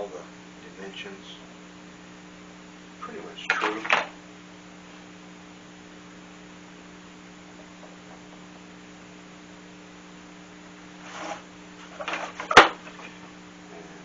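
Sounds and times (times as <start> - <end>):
electrical mains hum: 0.0 - 14.0.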